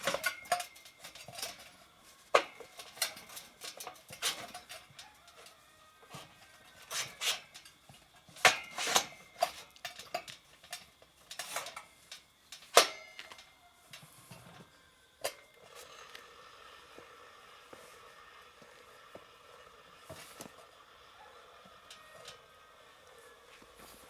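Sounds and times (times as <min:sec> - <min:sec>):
metal tools clinking: 0:00.0 - 0:16.4.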